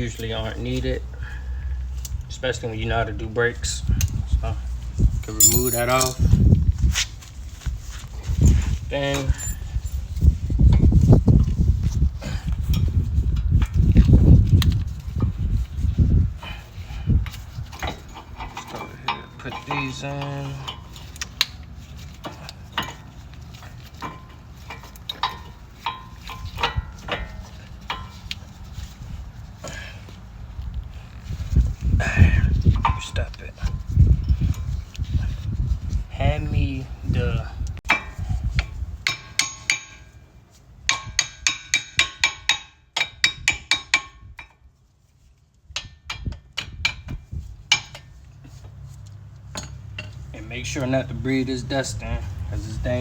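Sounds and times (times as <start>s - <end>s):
metallic clicks and clinks: 5.2s - 6.2s, 9.2s - 10.1s.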